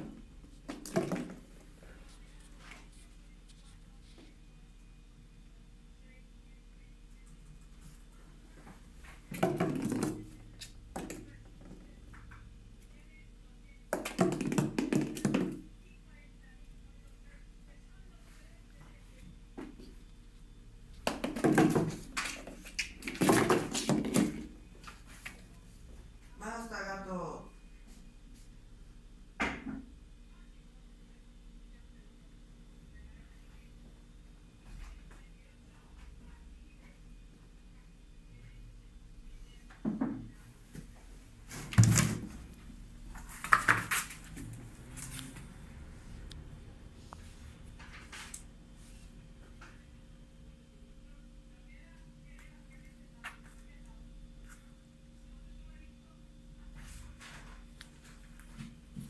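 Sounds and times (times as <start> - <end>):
household objects knocking: 13.9 - 15.7.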